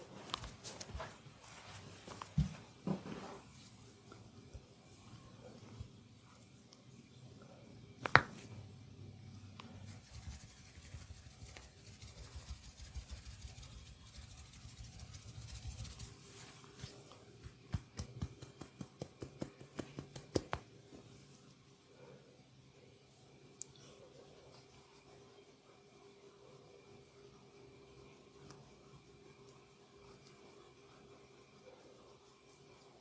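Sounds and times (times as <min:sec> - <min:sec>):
rubbing and patting on skin: 0:09.6 - 0:20.7.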